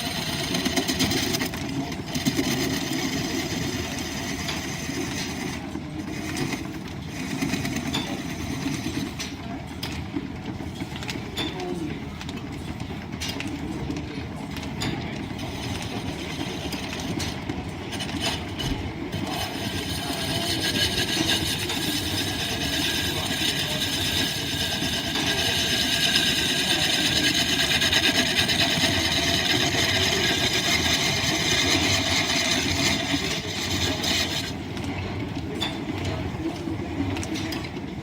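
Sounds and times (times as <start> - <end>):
turning tool scraping wood: 0.0 - 9.4, 15.4 - 34.7
wood lathe rumbling: 0.0 - 9.4, 15.2 - 34.9.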